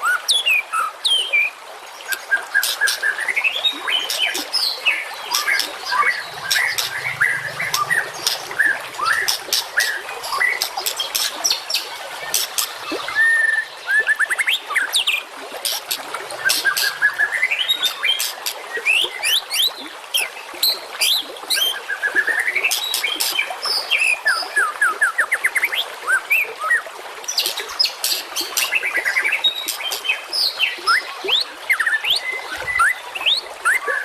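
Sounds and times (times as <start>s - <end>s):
songbird singing: 2.7s - 19.7s.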